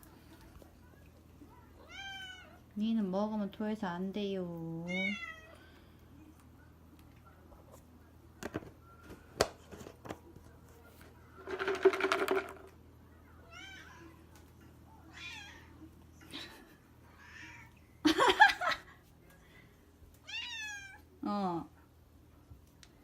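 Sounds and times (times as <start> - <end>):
cats meowing: 15.1 - 15.8, 20.2 - 21.0.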